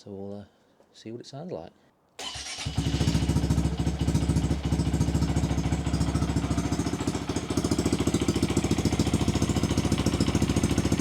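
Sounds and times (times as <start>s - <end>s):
motorcycle engine idling: 2.6s - 11.0s.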